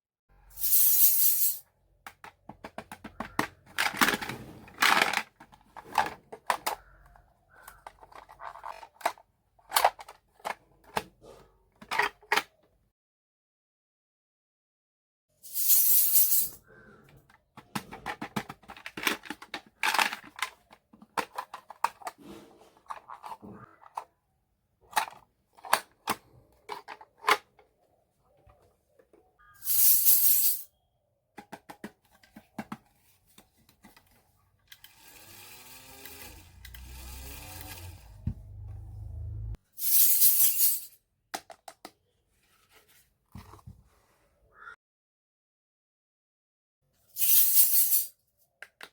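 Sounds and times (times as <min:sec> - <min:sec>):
plastic toy pieces clattering: 0:00.6 - 0:06.8, 0:07.7 - 0:11.0, 0:11.8 - 0:12.5, 0:17.6 - 0:22.2, 0:24.9 - 0:27.6.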